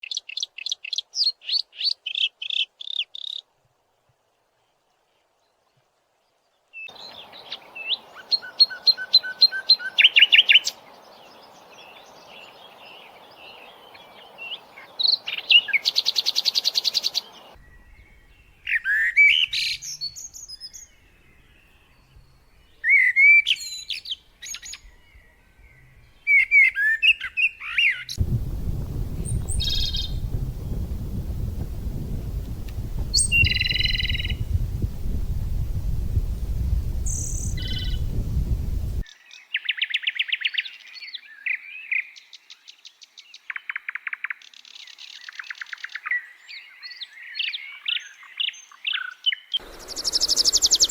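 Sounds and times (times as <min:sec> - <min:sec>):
songbirds chirping and trilling: 0:06.6 - 0:50.9
steady rushing noise: 0:28.2 - 0:39.0.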